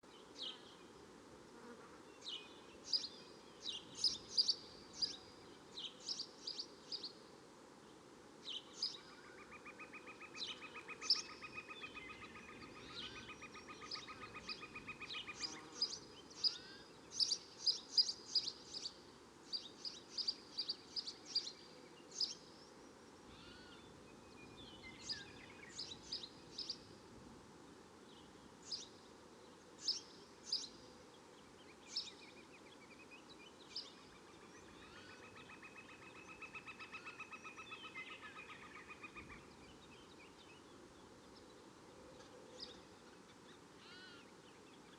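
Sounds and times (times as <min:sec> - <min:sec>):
low background hiss: 0:00.0 - 0:44.9.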